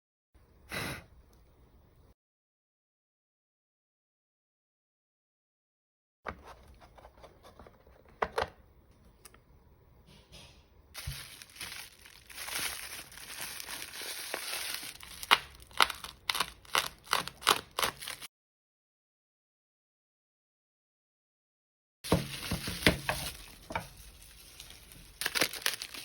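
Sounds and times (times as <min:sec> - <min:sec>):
packaging crinkling and tearing: 0:11.0 - 0:18.3, 0:22.1 - 0:26.0.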